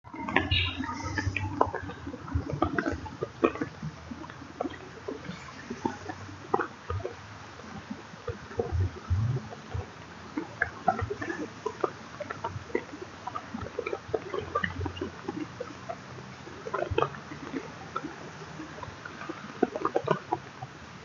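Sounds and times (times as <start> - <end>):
rain falling on water: 0.0 - 21.0
low thumps: 8.6 - 9.9.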